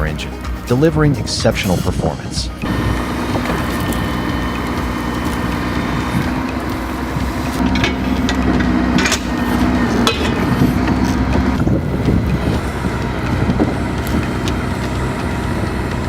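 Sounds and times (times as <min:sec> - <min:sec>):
truck diesel engine running: 0:00.0 - 0:16.0
sharp metal clanks: 0:03.3 - 0:11.6.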